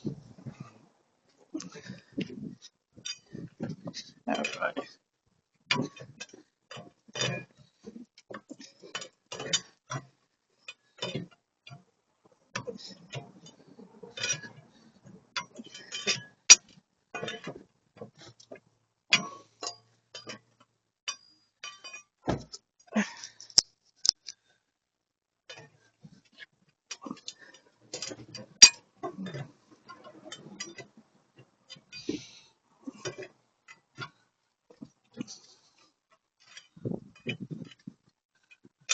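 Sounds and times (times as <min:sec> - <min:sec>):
metal clicks and clinks of tools: 0:23.2 - 0:24.3, 0:28.0 - 0:29.4.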